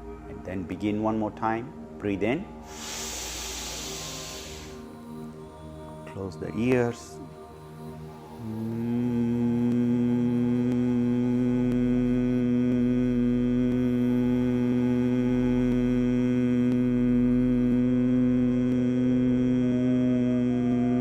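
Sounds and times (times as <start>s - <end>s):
man humming a low note: 2.7s - 5.4s, 8.0s - 21.0s.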